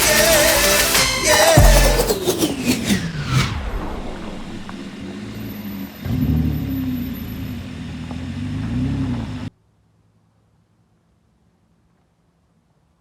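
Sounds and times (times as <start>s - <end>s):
off-road vehicle engine running: 1.6s - 9.5s.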